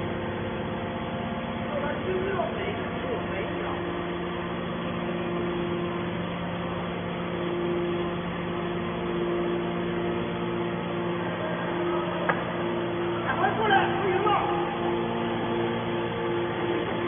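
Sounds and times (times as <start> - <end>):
heavy machinery humming: 0.0 - 17.0.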